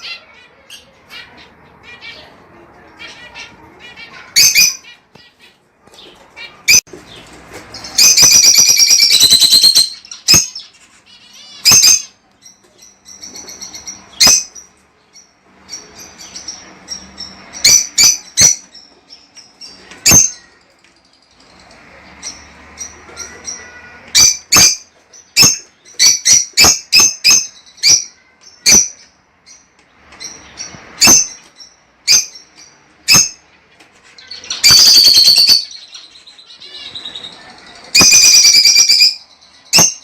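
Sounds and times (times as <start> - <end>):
lovebirds shrieking: 34.2 - 40.0.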